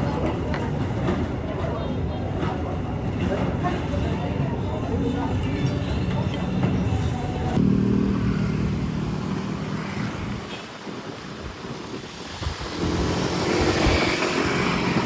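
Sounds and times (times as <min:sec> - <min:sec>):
vehicle approaching: 0:07.2 - 0:15.0.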